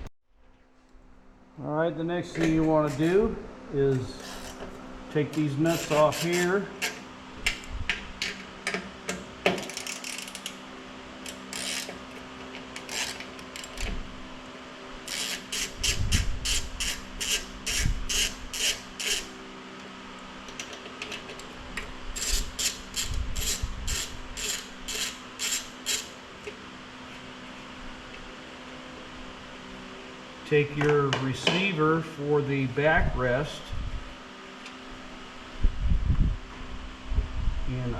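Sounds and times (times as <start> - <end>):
ratchet wrench clicking: 9.6 - 10.6, 11.3 - 12.0, 15.1 - 19.3, 22.2 - 26.1.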